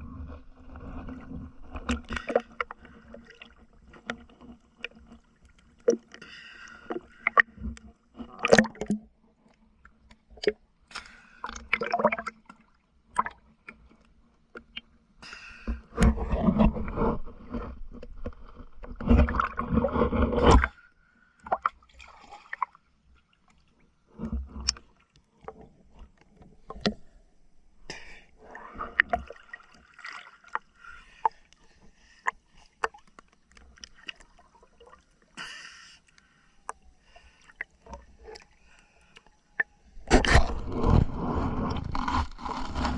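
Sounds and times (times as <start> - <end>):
gurgling regulator bubbles: 11.4 - 12.3
short scrapes: 18.8 - 20.8, 40.1 - 42.9.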